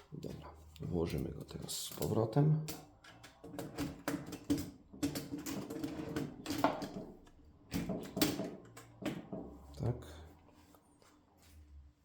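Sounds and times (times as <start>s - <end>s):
metal clicks and knocks: 1.5s - 9.5s
typewriter parts rattling: 1.7s - 7.2s.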